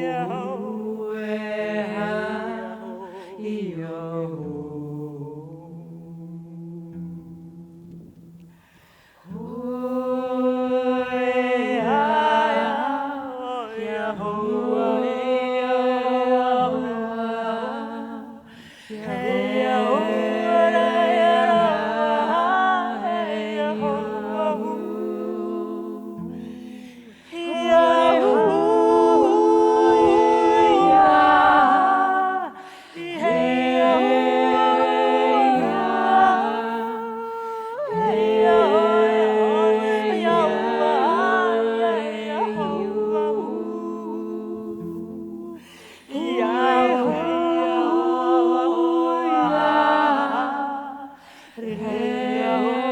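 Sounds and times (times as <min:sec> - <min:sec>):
voices singing in close harmony: 0:00.0 - 0:52.9.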